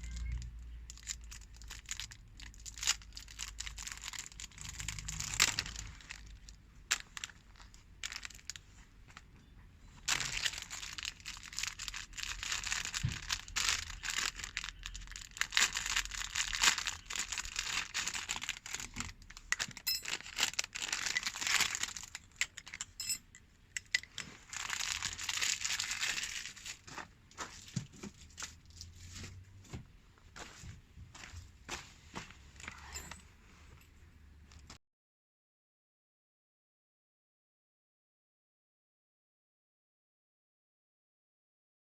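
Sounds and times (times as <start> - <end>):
tinder crackly rustling: 10.0 - 22.8, 24.3 - 28.8.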